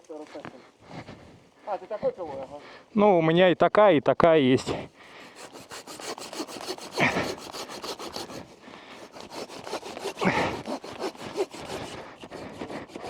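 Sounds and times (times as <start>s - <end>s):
hand saw cutting wood: 5.1s - 13.0s.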